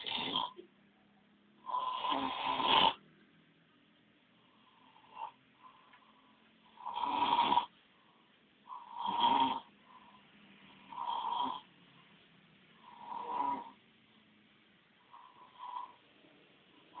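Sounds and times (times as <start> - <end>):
person snoring: 0.0 - 0.6, 1.6 - 3.0, 6.7 - 7.7, 8.7 - 10.2, 10.8 - 11.7, 12.8 - 13.8, 15.1 - 16.0.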